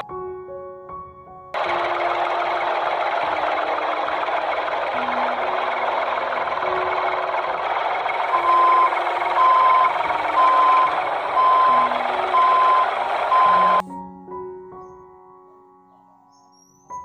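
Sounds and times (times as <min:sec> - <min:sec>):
engine rumble: 0:01.6 - 0:13.8
truck reversing alarm beeping: 0:01.6 - 0:13.8.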